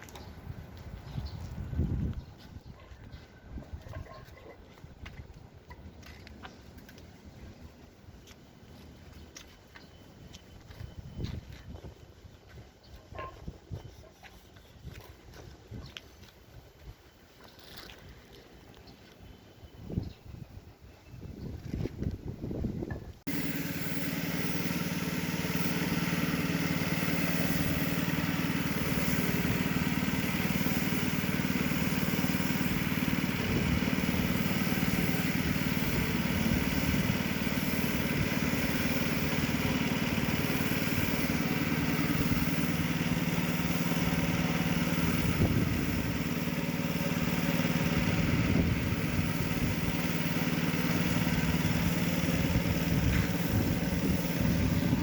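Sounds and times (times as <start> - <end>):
motor humming: 23.3 - 55.0.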